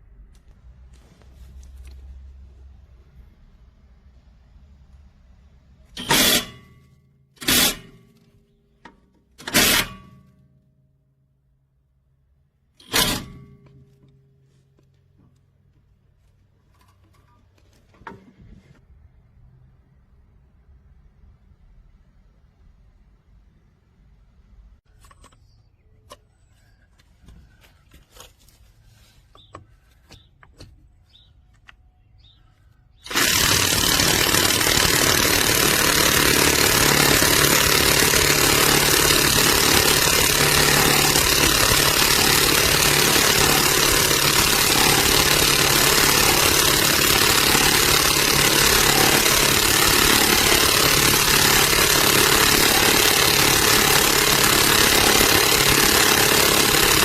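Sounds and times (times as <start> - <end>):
impact wrench hammering rattle: 5.9 - 6.8, 7.4 - 8.3, 8.9 - 10.4, 12.8 - 14.1, 33.0 - 57.0.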